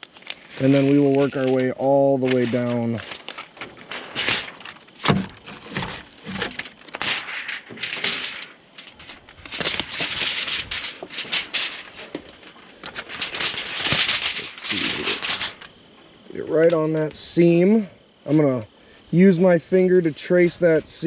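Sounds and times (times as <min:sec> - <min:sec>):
foil tape crinkling: 0:00.0 - 0:15.9.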